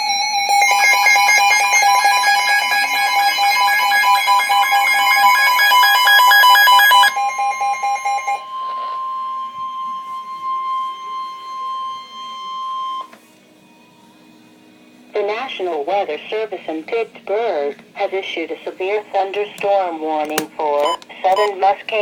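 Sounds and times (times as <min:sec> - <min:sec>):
two-pitch alert alarm: 0:00.0 - 0:13.1, 0:20.8 - 0:21.5.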